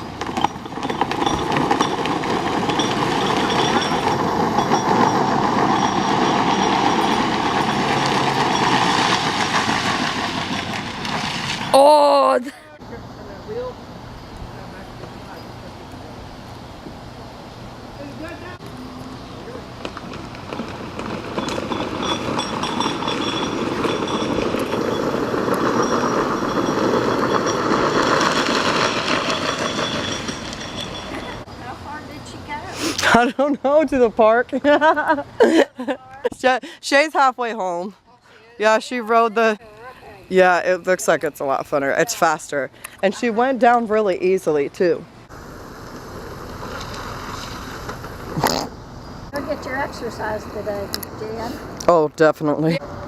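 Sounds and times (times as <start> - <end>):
plastic toy wheels rumbling: 0.0 - 11.8, 19.7 - 31.4.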